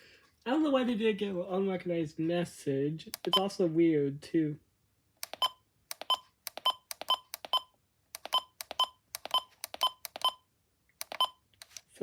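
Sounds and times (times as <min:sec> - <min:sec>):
electronic key beeps: 0:05.3 - 0:10.4, 0:11.0 - 0:11.4.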